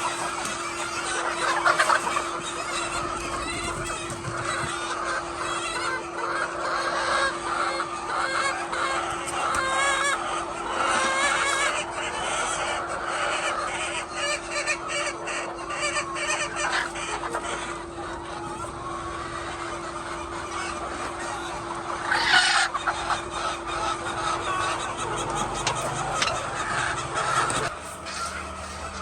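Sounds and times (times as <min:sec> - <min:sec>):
hens clucking: 0:00.0 - 0:29.0
steady hum: 0:00.0 - 0:29.0.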